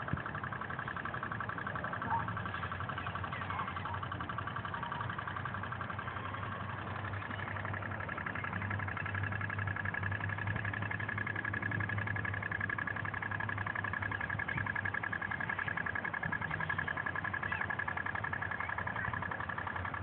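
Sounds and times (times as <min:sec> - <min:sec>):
toy steam boat putt-putt: 0:00.0 - 0:20.0.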